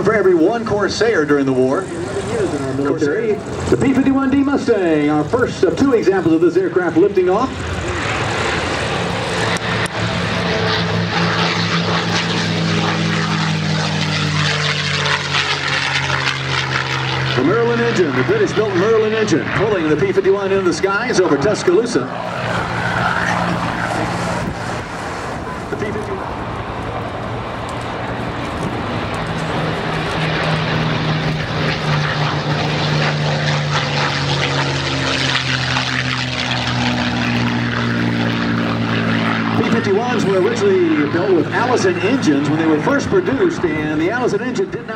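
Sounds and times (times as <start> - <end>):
propeller aircraft engine droning: 0.0 - 44.9.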